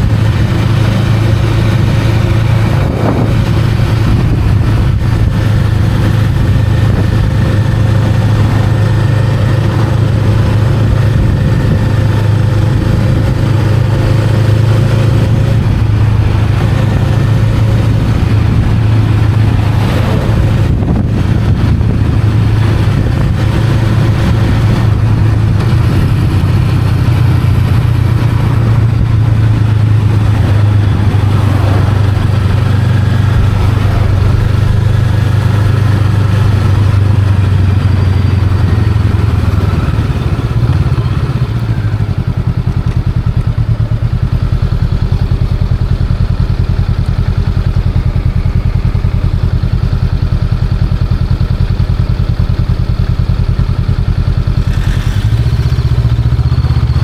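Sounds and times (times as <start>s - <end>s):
motorcycle engine running: 0.0s - 57.0s.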